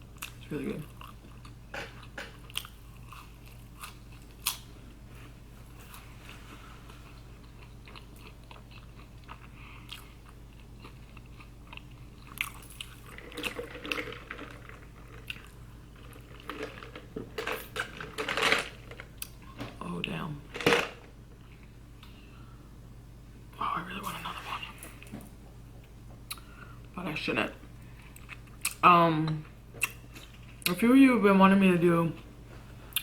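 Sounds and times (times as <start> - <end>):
person chewing and crunching food: 0.1 - 19.6, 27.8 - 28.8.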